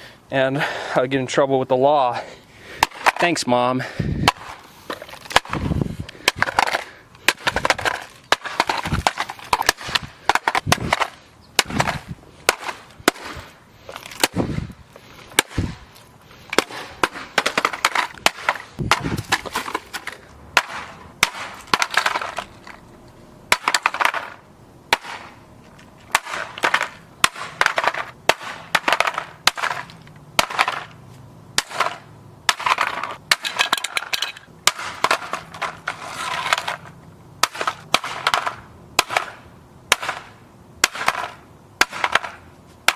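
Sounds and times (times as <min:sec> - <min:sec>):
plastic toy being smashed: 0:04.2 - 0:13.4, 0:31.6 - 0:36.8
breaking parts crackling: 0:04.3 - 0:12.8, 0:31.6 - 0:36.9.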